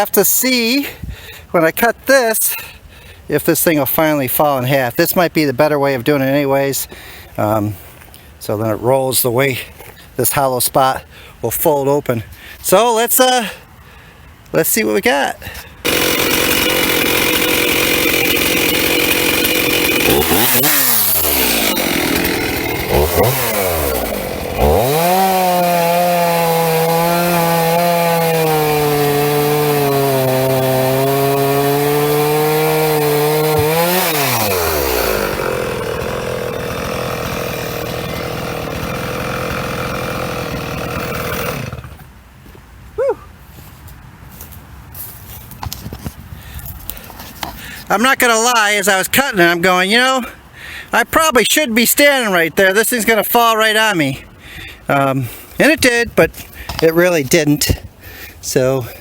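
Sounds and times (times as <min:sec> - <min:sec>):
chainsaw cutting wood: 0:15.8 - 0:42.1.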